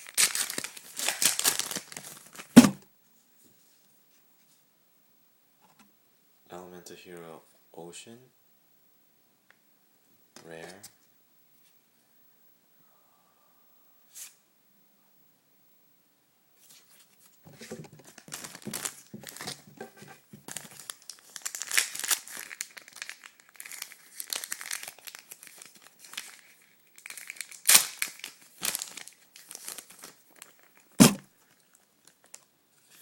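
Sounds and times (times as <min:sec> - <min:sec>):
foil wrapper crinkling and tearing: 0:00.0 - 0:02.8, 0:17.6 - 0:32.5
sharp knock: 0:02.6 - 0:02.8, 0:31.0 - 0:31.2.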